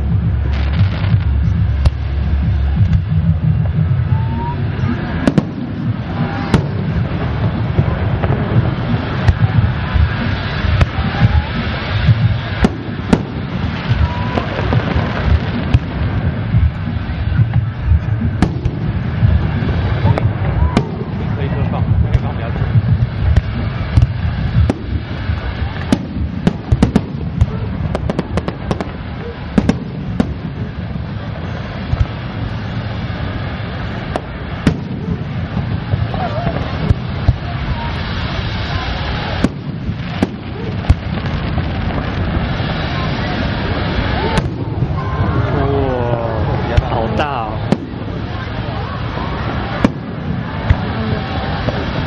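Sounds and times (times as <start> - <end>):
continuous low rumble: 0.0 - 52.0
fireworks booming: 0.0 - 52.0.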